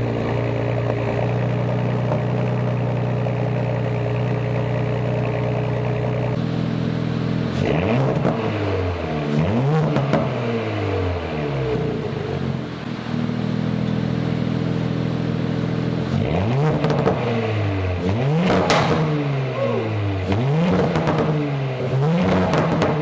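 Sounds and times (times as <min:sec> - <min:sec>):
car engine idling and revving: 0:00.0 - 0:23.0
sharp exhaust crack: 0:18.4 - 0:19.8.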